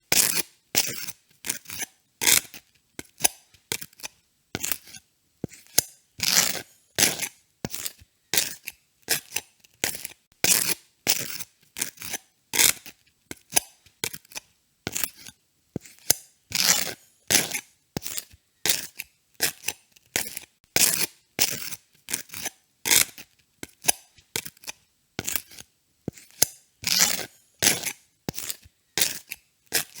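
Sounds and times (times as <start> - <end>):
knife scraping butter on toast: 0.2 - 30.0.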